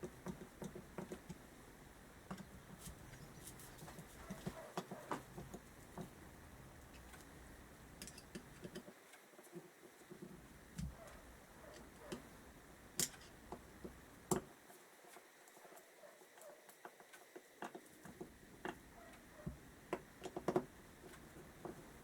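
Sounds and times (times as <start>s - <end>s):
small metal parts clicking: 8.0s - 8.9s, 13.0s - 13.4s.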